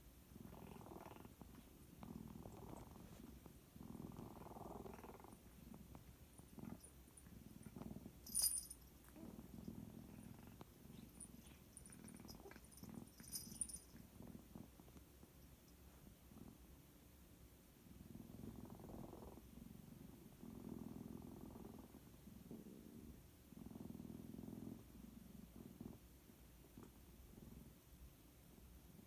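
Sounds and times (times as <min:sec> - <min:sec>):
cat purring breaths: 0:00.3 - 0:08.4, 0:09.1 - 0:14.8.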